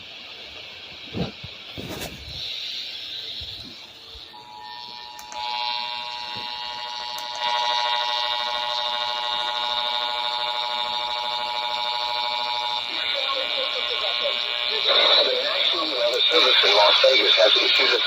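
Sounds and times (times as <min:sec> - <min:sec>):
two-tone alarm tone: 0:04.2 - 0:17.5.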